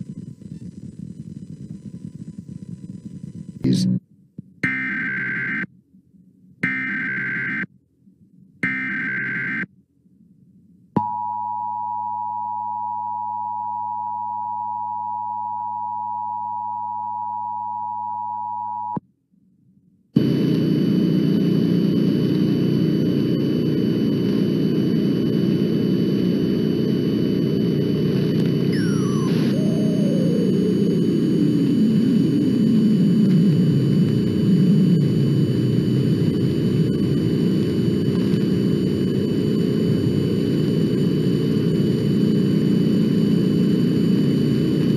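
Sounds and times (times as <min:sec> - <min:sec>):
two-tone alert buzz: 0:08.6 - 0:09.6, 0:28.7 - 0:32.6.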